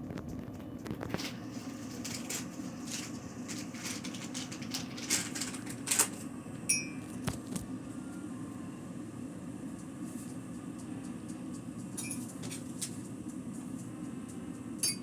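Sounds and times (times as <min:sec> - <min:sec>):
ringing clink: 0:06.7 - 0:07.0.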